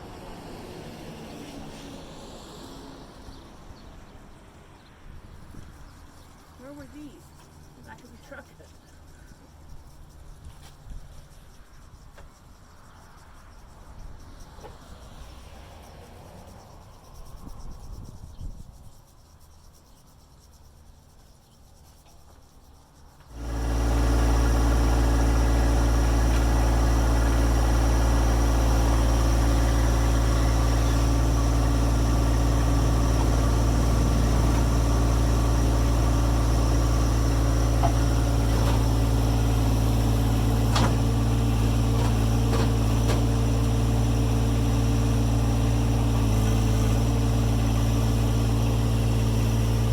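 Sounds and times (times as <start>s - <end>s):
insects buzzing: 0.0s - 49.9s
tractor diesel engine idling: 23.3s - 49.9s.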